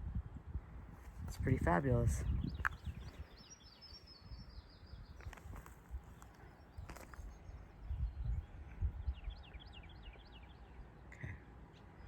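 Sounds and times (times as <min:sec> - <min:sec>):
low thumping rumbles on microphone: 0:01.0 - 0:03.3
small bird chirping: 0:02.1 - 0:08.4.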